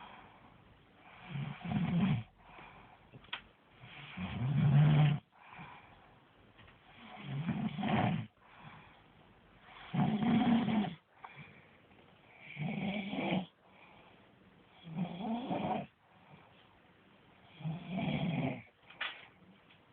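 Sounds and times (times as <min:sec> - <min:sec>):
person snoring: 0:01.1 - 0:02.4, 0:03.8 - 0:05.3, 0:07.0 - 0:08.3, 0:09.8 - 0:11.0, 0:14.8 - 0:15.9, 0:17.6 - 0:18.7.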